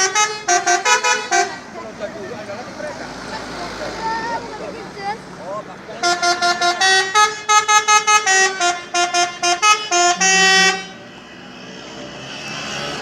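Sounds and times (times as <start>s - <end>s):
bus musical horn melody: 0.0s - 1.8s, 6.0s - 11.5s
low traffic rumble: 0.0s - 13.0s.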